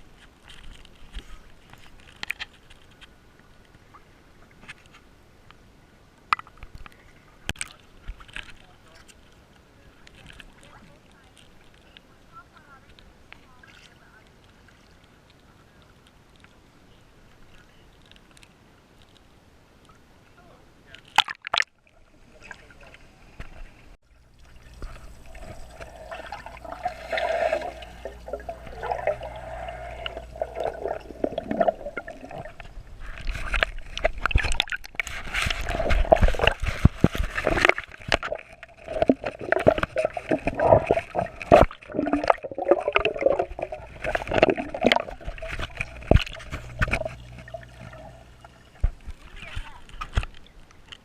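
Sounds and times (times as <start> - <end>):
water splashing and gurgling: 24.2 - 50.4.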